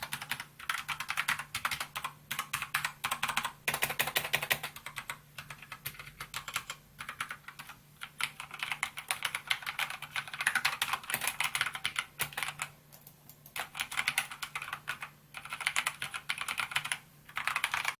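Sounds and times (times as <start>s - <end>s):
mechanical keyboard typing: 0.0s - 18.0s.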